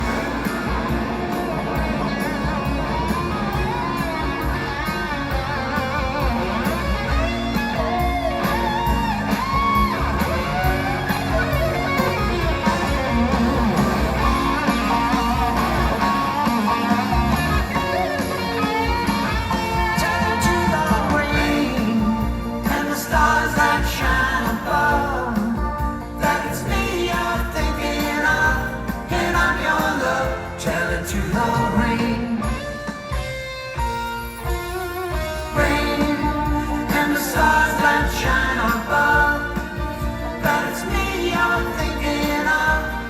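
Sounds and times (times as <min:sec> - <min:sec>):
guitar: 0:00.0 - 0:43.0
live band playing: 0:00.0 - 0:43.0.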